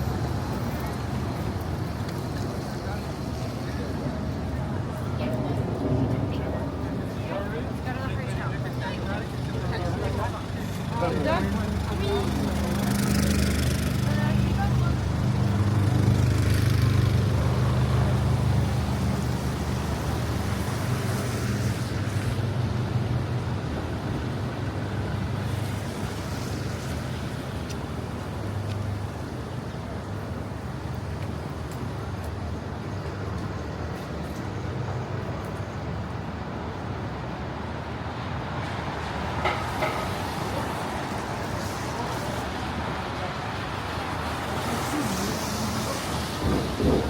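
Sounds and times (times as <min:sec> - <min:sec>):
traffic noise: 0:00.0 - 0:47.0
vehicle engine humming: 0:07.7 - 0:29.6.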